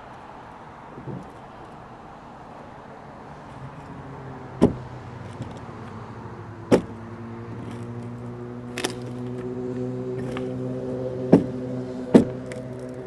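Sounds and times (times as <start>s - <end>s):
sharp knocks: 4.6s - 5.6s, 6.7s - 7.0s, 11.3s - 12.6s.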